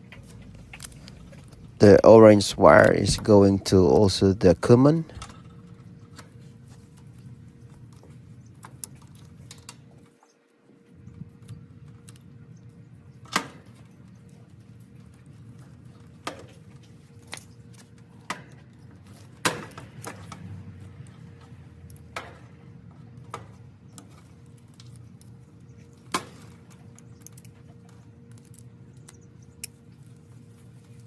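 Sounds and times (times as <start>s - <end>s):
low steady hum: 0.0s - 10.1s.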